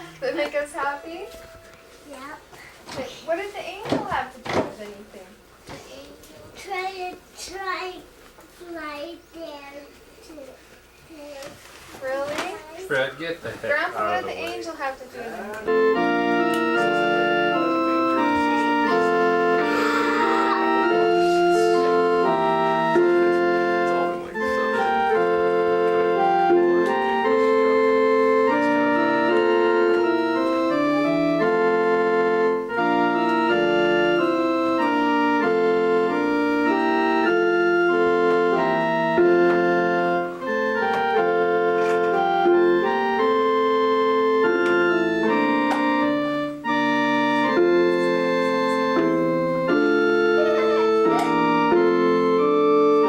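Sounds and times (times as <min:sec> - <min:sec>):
organ chords: 0:00.0 - 0:03.4, 0:12.9 - 0:53.0.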